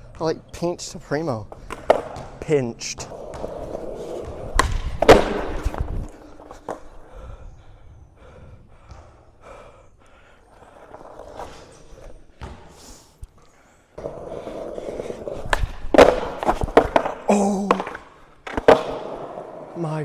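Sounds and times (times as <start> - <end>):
skateboard wheels rolling on pavement: 0.0 - 9.5, 10.4 - 20.0
skateboard clacks: 1.5 - 7.1, 14.0 - 19.8.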